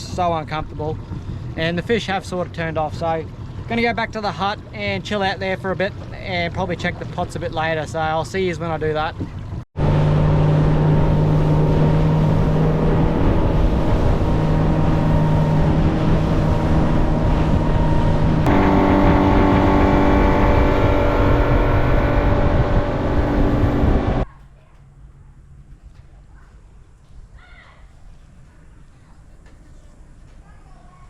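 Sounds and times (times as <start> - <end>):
outboard motor running: 0.0 - 24.2
water noise: 0.0 - 24.3
wind: 0.0 - 31.0.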